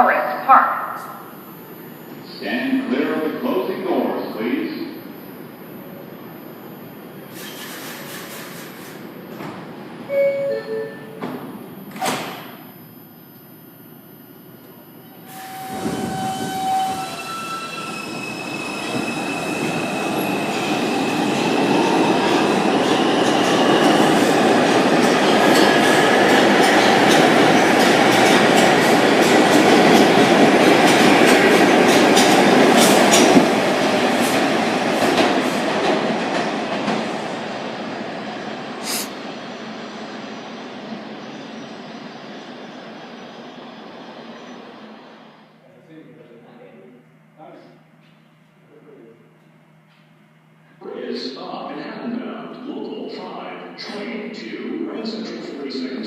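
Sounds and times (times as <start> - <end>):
train doors closing: 0.5 - 12.9, 14.4 - 45.5
two-tone door chime: 10.1 - 12.0.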